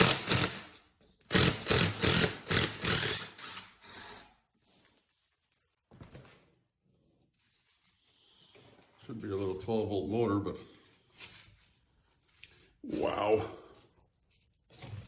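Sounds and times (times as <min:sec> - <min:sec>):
harsh mechanical tool bursts: 0:00.0 - 0:04.3.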